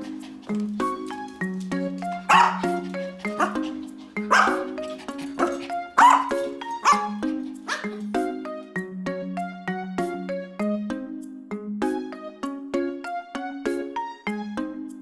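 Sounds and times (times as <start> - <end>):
plucked-string background music: 0.0 - 8.8
dog barking: 2.1 - 8.1.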